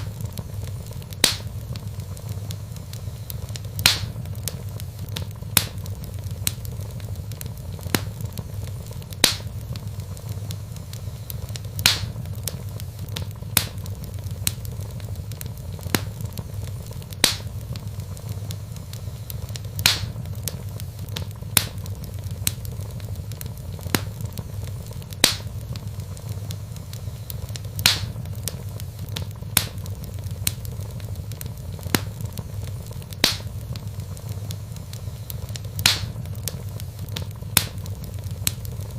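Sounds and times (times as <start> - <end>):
low steady rumble: 0.0 - 38.9
wood fire crackling: 0.0 - 38.9.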